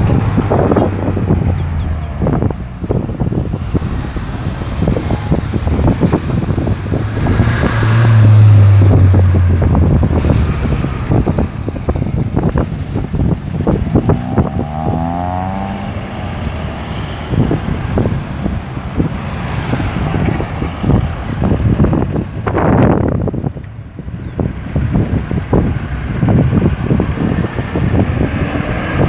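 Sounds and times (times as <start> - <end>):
low engine drone: 0.0 - 18.8
road traffic passing: 0.0 - 29.0
wind buffeting microphone: 0.0 - 29.0
engine rising in pitch: 3.4 - 12.6, 13.9 - 17.8.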